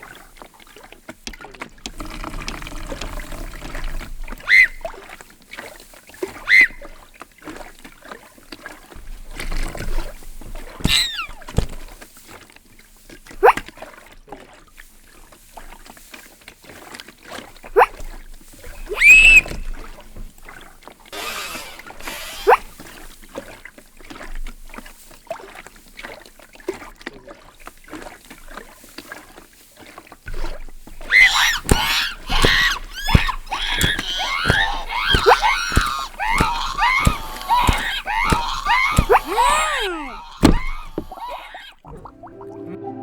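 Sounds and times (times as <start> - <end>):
short squeaks: 10.8 - 11.8, 18.8 - 19.7, 21.2 - 22.8, 30.9 - 41.7
foley knocks and clatters: 30.9 - 41.6.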